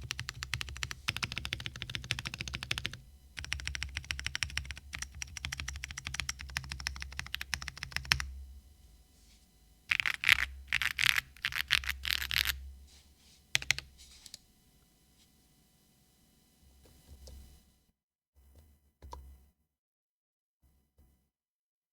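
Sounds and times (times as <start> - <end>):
mechanical keyboard typing: 0.0 - 8.3, 9.9 - 12.6, 13.6 - 14.4.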